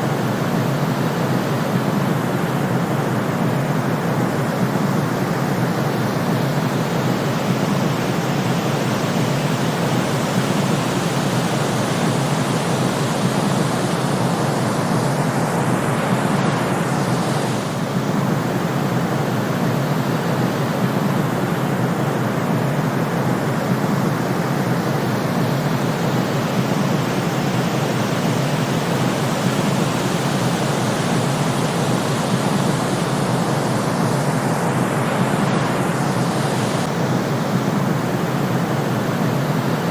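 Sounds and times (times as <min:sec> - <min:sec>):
white noise hiss: 0:00.0 - 0:39.9.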